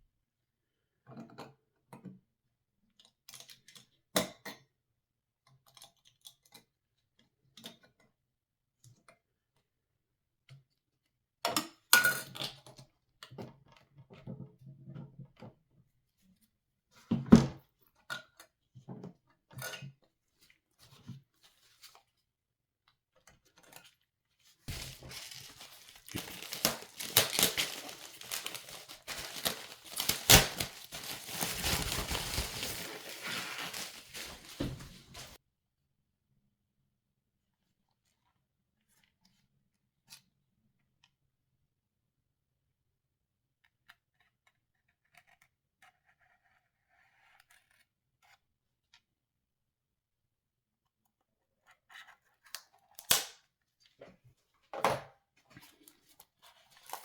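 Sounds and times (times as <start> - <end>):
packaging crinkling and tearing: 24.7 - 35.4.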